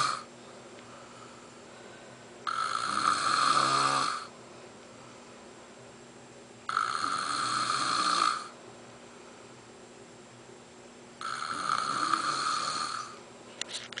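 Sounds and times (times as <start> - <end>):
man snoring: 0.0 - 0.3, 2.4 - 4.3, 6.7 - 8.6, 11.2 - 13.2.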